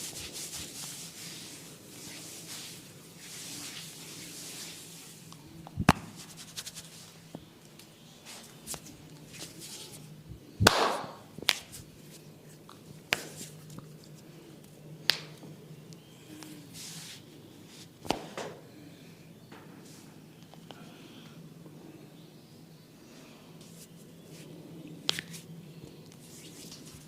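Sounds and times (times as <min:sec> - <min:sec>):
hands rubbing skin: 0:00.0 - 0:05.2, 0:05.8 - 0:07.2, 0:08.2 - 0:10.1, 0:11.4 - 0:14.3, 0:25.1 - 0:25.5, 0:26.1 - 0:27.0
hands smacking and tapping: 0:05.7 - 0:06.8, 0:10.6 - 0:11.9, 0:12.7 - 0:13.9, 0:15.1 - 0:15.5, 0:25.1 - 0:25.4.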